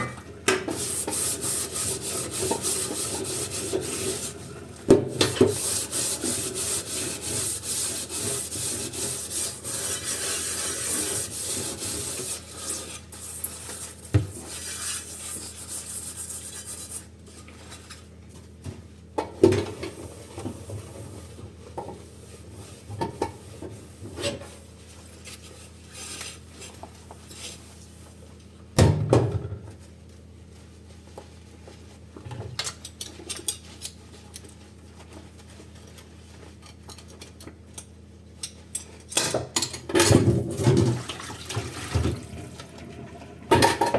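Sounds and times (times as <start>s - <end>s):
dish scrubbing: 0.0s - 18.0s, 19.6s - 28.0s, 40.0s - 43.9s
dishes clinking and knocking: 43.5s - 43.9s.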